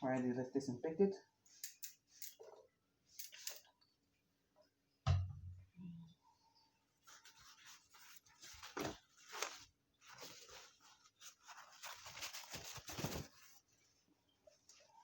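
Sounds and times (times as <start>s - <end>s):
packaging scuffs and rustles: 7.4s - 13.7s.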